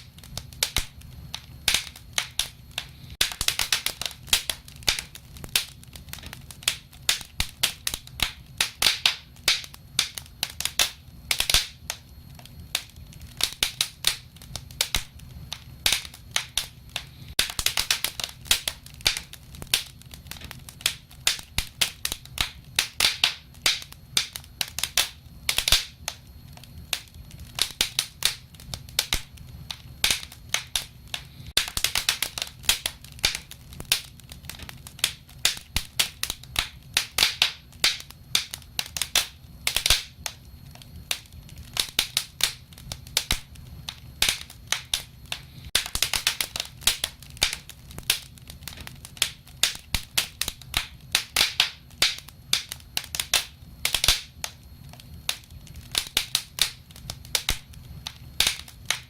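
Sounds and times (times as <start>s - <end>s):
wood fire crackling: 0.0s - 59.0s.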